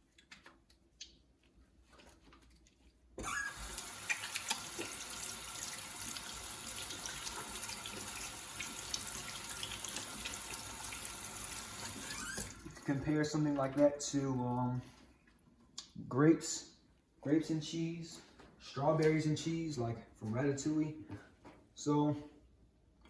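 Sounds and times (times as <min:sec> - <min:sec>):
water tap turning on: 0:03.2 - 0:13.0
water running into sink: 0:03.2 - 0:13.8.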